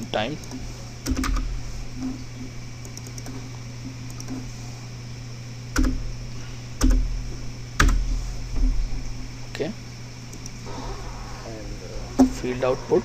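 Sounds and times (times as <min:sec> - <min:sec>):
steady low hum: 0:00.0 - 0:13.0
computer keyboard keystrokes: 0:02.8 - 0:03.4.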